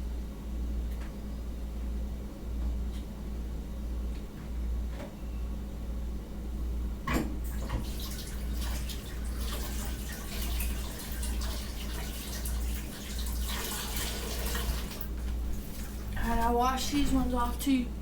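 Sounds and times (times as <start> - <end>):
tap water running into sink: 7.5 - 16.1.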